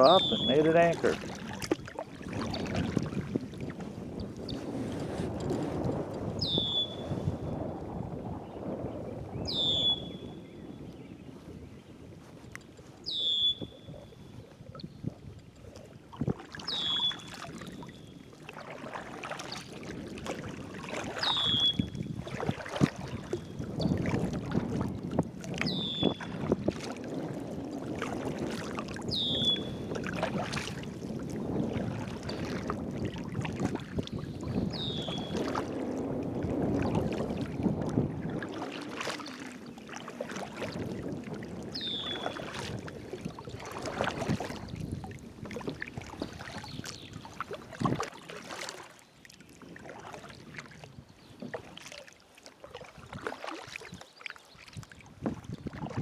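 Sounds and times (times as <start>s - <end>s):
bird high downward call: 0.0s - 0.7s, 6.4s - 7.0s, 13.1s - 13.7s
water sloshing against kayak: 0.0s - 56.0s
wind: 0.0s - 56.0s.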